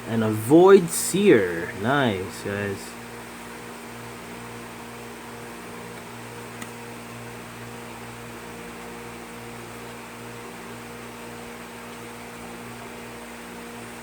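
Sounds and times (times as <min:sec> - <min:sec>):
background hiss: 0:00.0 - 0:03.0
electrical mains hum: 0:00.0 - 0:14.0.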